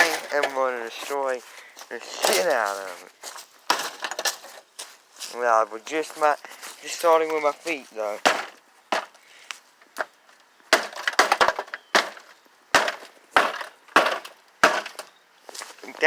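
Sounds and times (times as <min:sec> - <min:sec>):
feet kicking metal microwave: 0:08.2 - 0:09.2, 0:10.7 - 0:15.1.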